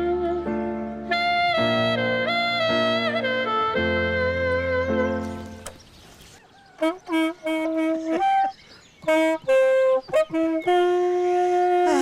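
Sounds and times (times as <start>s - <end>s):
horn-like wind instrument tune: 0.0s - 5.7s, 6.8s - 12.0s.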